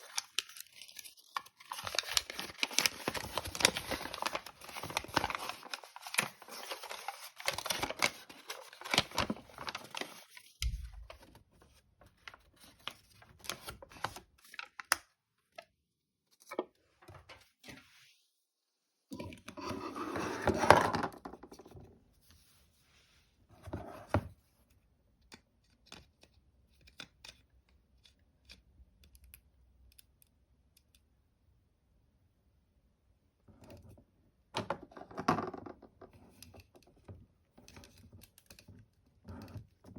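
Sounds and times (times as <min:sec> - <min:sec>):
packaging tearing and rustling: 0:00.0 - 0:10.5.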